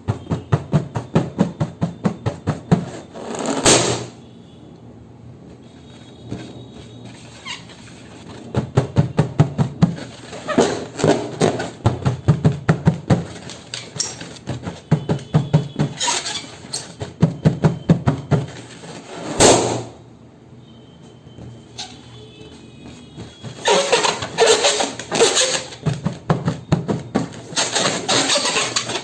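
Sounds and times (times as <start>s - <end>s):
balloon bursting: 0.0s - 4.2s, 8.3s - 20.0s, 23.3s - 29.0s
hand pump strokes: 13.3s - 17.1s, 23.2s - 26.0s, 26.9s - 29.0s.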